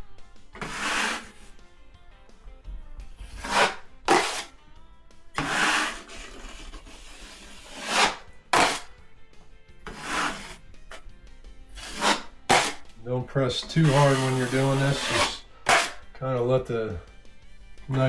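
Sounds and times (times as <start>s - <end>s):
faint background music: 0.0s - 18.0s
taping knife scraping wall: 0.6s - 1.6s, 3.2s - 4.6s, 5.4s - 9.0s, 9.8s - 11.1s, 11.7s - 12.9s, 13.6s - 16.1s.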